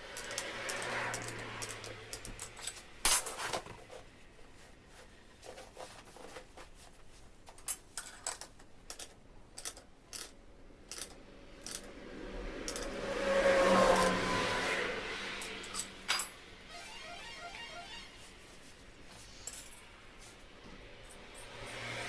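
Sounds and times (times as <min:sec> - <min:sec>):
metal parts and tools clinking: 0:00.1 - 0:03.7, 0:07.5 - 0:11.9, 0:12.7 - 0:13.0, 0:13.9 - 0:14.2, 0:15.4 - 0:16.4, 0:19.3 - 0:19.9, 0:21.0 - 0:22.0.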